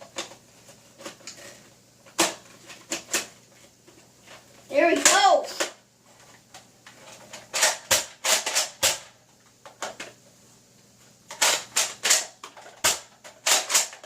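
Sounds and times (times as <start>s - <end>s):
plastic toy blaster clicking: 7.5s - 9.1s, 11.3s - 14.0s.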